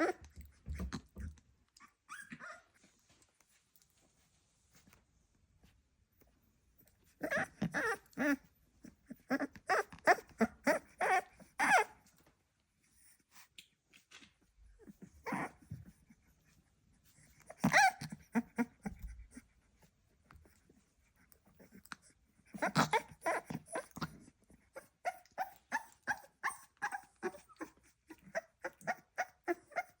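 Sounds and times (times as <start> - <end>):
puppy squeaking: 0.0 - 2.7, 7.2 - 8.4, 9.3 - 12.0, 17.5 - 19.0, 24.8 - 30.0.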